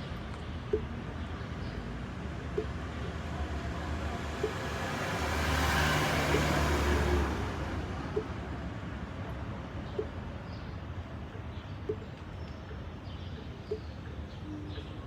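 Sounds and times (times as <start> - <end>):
vehicle passing by: 3.1 - 8.3.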